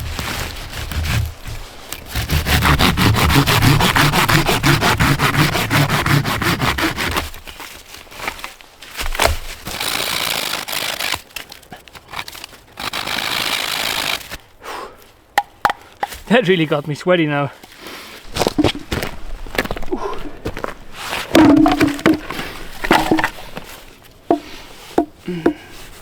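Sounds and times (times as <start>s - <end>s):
hand saw cutting log: 0.0s - 7.6s, 9.1s - 14.4s, 21.2s - 23.4s
sharp knock: 21.4s - 23.3s.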